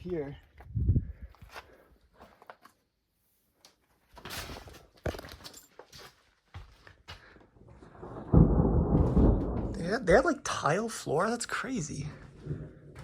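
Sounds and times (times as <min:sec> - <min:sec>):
footsteps and shuffles: 0:00.4 - 0:07.8, 0:12.1 - 0:13.0
loud low rumble: 0:08.1 - 0:10.4.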